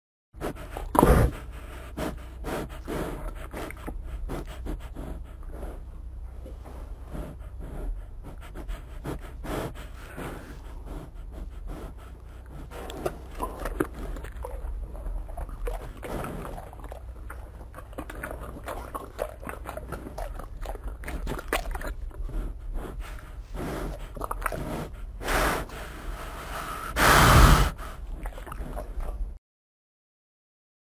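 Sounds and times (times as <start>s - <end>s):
bear snorting: 0.4s - 29.3s
bear chewing and biting: 0.4s - 29.4s
low rumble: 0.4s - 29.4s.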